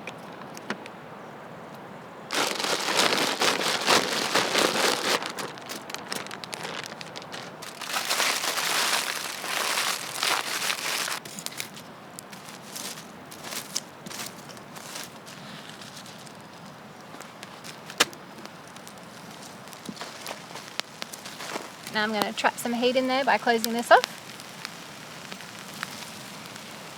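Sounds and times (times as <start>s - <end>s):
foil crinkling: 2.3s - 26.9s.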